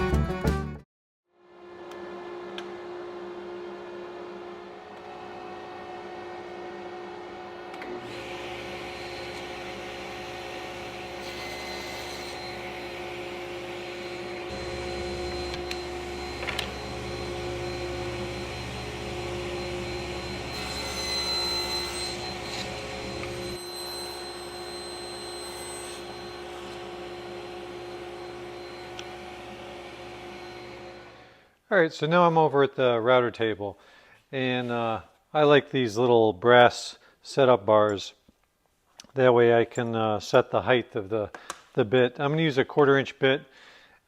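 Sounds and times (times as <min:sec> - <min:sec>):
woodworking power tool running: 0:01.5 - 0:31.4
workshop hum: 0:01.5 - 0:31.6.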